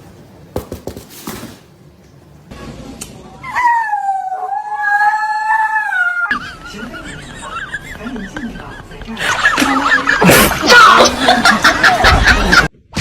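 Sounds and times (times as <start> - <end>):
dog howling: 3.4 - 6.3.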